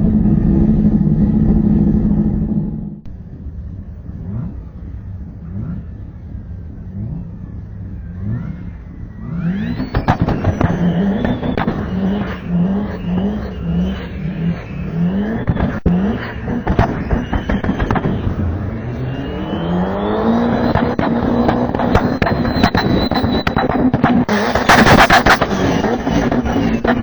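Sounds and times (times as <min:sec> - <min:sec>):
car engine revving: 0:00.0 - 0:27.0
turbo flutter chatter: 0:07.2 - 0:27.0
high turbo whistle: 0:08.0 - 0:27.0.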